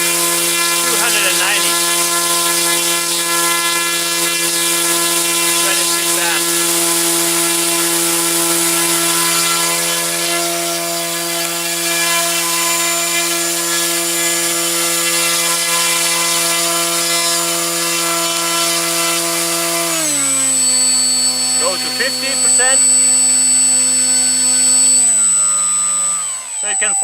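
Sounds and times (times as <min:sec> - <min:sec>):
electric motor and propeller whine: 0:00.0 - 0:27.0.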